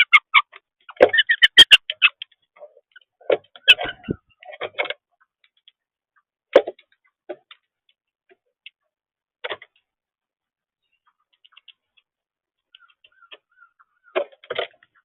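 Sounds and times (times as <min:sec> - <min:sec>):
birds chirping: 0:00.0 - 0:08.8, 0:10.6 - 0:15.0.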